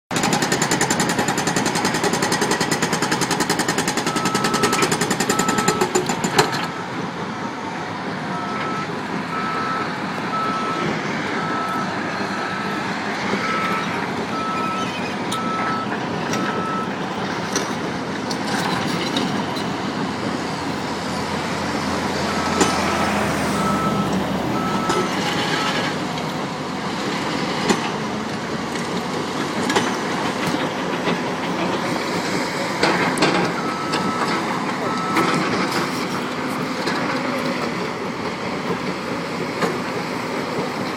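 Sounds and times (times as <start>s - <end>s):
excavator engine running: 0.1s - 40.9s
backup alarm beeping: 4.1s - 6.0s.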